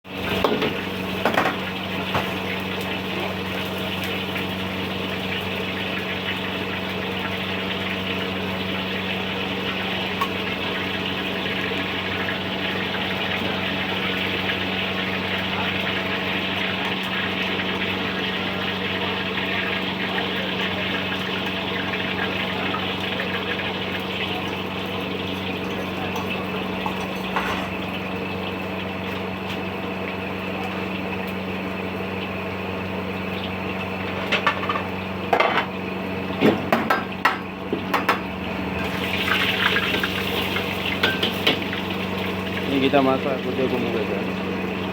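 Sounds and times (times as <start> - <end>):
noodles sizzling while stir-frying: 0.1 - 44.9.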